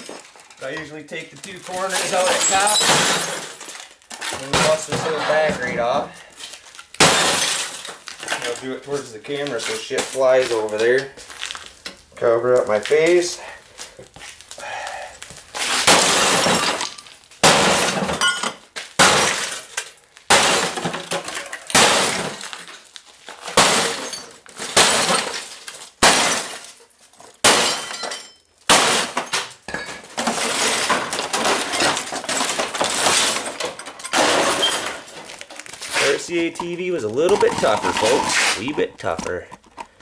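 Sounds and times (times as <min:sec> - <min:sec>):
glass and plastic shattering: 0:00.0 - 0:12.0, 0:15.5 - 0:39.9
axe smashing television: 0:01.7 - 0:05.1, 0:06.9 - 0:08.1, 0:15.6 - 0:18.3, 0:18.9 - 0:19.7, 0:20.3 - 0:22.8, 0:23.4 - 0:26.8, 0:27.4 - 0:36.2.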